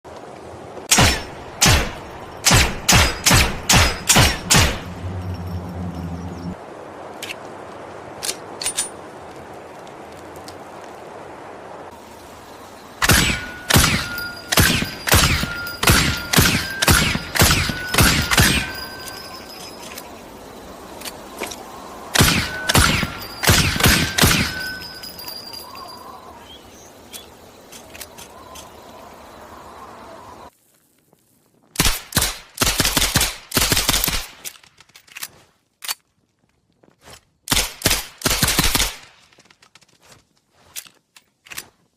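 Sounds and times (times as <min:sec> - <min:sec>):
pistol shots: 0:00.9 - 0:04.8, 0:13.0 - 0:18.8, 0:22.2 - 0:24.8.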